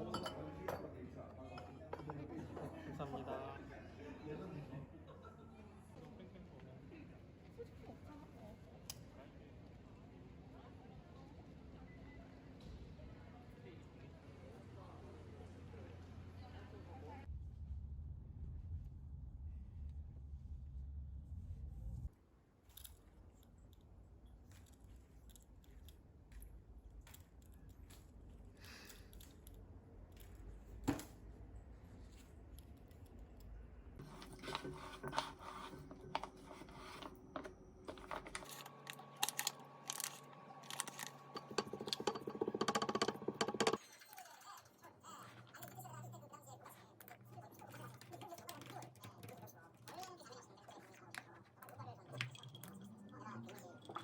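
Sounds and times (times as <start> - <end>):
tableware clicking and clinking: 0.0 - 3.1, 34.0 - 44.5, 50.8 - 54.0.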